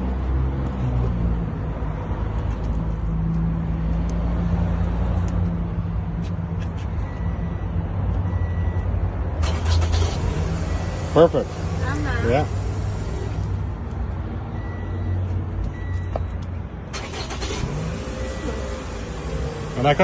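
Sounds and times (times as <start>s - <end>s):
car engine idling: 9.4s - 15.0s, 15.6s - 20.0s.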